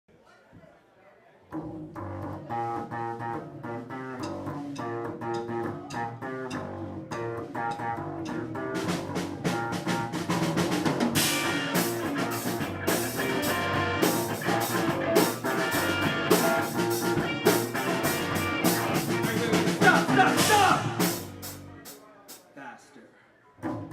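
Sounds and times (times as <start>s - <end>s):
rock-funk band playing: 1.6s - 22.4s
cymbals: 11.2s - 22.0s.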